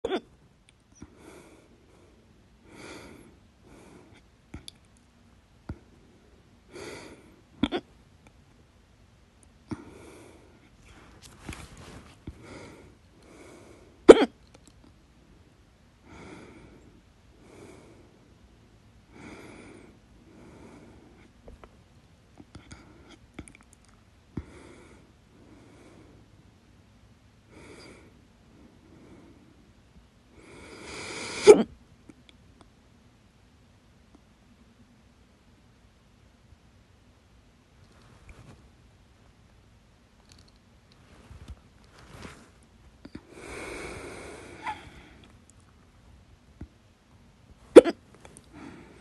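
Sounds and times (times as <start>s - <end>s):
person hiccupping: 0.0s - 0.3s, 7.6s - 7.9s, 47.7s - 48.0s
breathing: 1.0s - 4.2s, 5.7s - 7.4s, 9.7s - 14.0s, 16.0s - 18.4s, 19.1s - 21.3s, 24.4s - 26.3s, 27.5s - 29.6s, 30.3s - 31.4s, 41.0s - 45.4s, 48.4s - 49.0s.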